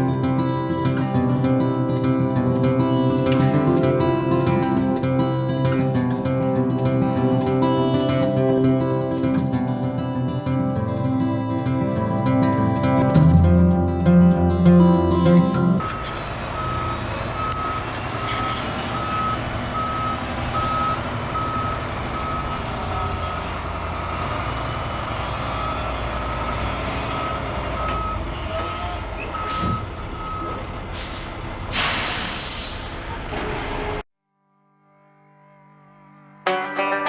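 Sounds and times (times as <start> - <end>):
diesel machine running: 12.0 - 34.0
backup alarm beeping: 15.8 - 23.6, 25.5 - 32.0
loud hissing burst: 30.9 - 33.2.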